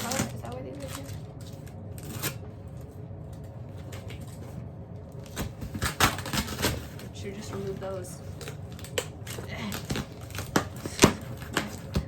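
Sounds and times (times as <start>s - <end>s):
package rustling and clicking: 5.2s - 12.0s.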